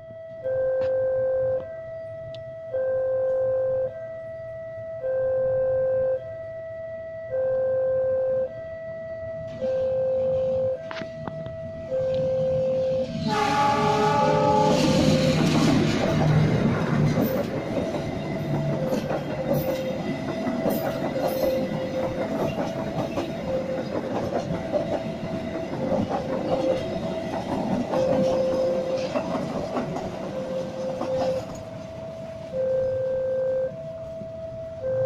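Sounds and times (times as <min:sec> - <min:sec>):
two-note warning tone: 0:00.0 - 0:16.6, 0:17.2 - 0:24.6, 0:25.2 - 0:35.0
train wheels clattering: 0:13.2 - 0:31.7.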